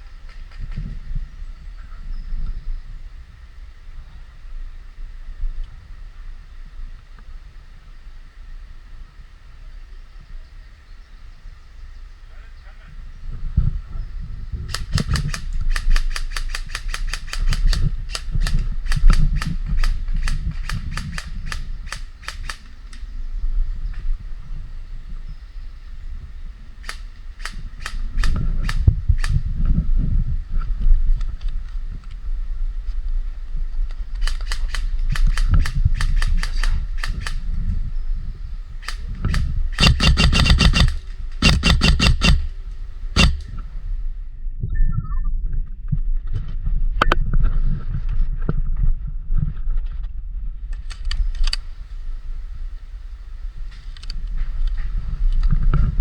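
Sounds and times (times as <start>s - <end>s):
low rumble on microphone: 0.0s - 56.0s
airsoft gun shots: 14.7s - 22.8s, 34.2s - 37.5s, 38.8s - 44.1s.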